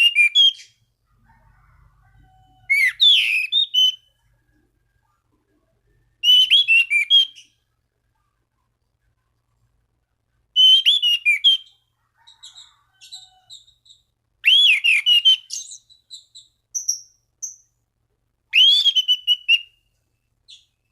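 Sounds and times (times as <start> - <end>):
thrush whistled song: 0.0 - 0.8, 2.7 - 4.2, 6.2 - 7.6, 10.6 - 11.8, 12.4 - 17.7, 18.5 - 19.9.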